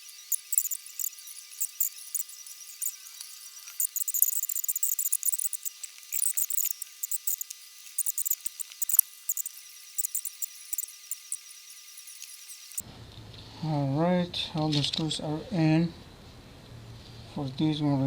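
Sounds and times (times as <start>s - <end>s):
screwdriver clicks and squeaks: 0.0s - 12.8s.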